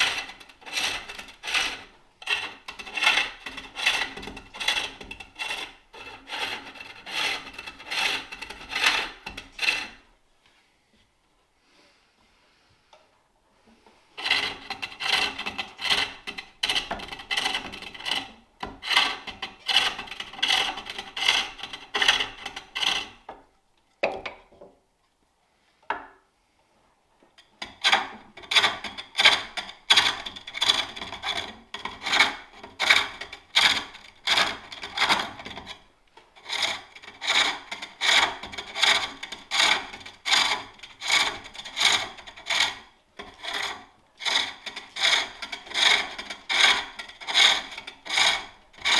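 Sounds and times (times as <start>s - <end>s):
lathe tool rasping wood: 0.0s - 10.0s, 43.4s - 48.9s.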